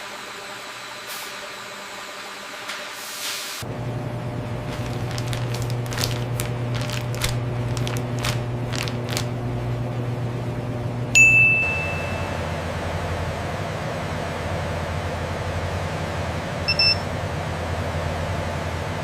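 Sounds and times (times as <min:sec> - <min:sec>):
low machinery hum: 0:03.6 - 0:19.0
loud electronic ding: 0:11.2 - 0:12.6.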